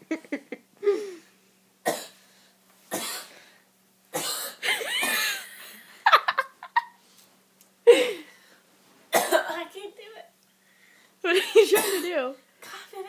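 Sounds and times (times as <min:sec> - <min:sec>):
person coughing up mucus: 0:01.8 - 0:02.2, 0:02.9 - 0:03.3, 0:04.1 - 0:05.4, 0:09.1 - 0:09.6, 0:11.6 - 0:12.9.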